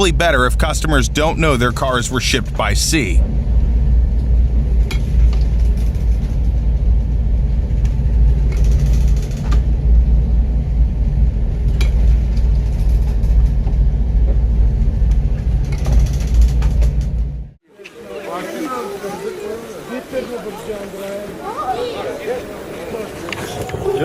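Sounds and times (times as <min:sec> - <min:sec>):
loud low rumble: 0:00.0 - 0:17.6.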